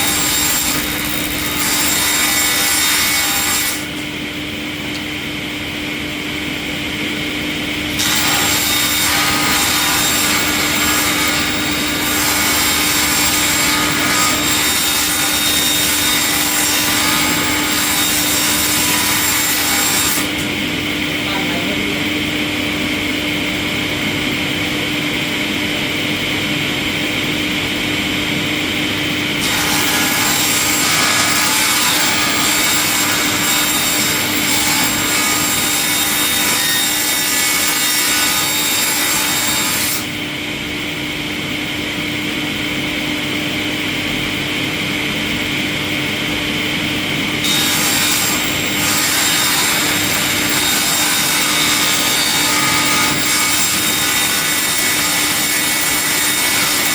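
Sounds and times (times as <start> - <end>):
wood machinery humming: 0.0 - 4.0.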